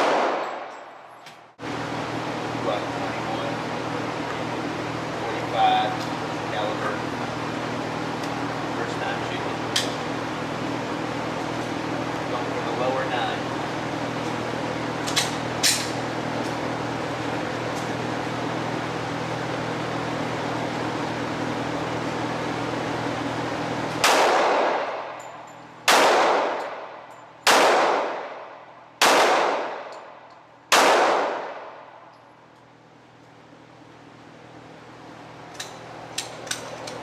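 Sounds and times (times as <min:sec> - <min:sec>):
pistol shots with echo: 0:00.0 - 0:00.8, 0:24.0 - 0:25.2, 0:25.8 - 0:29.9, 0:30.7 - 0:31.9.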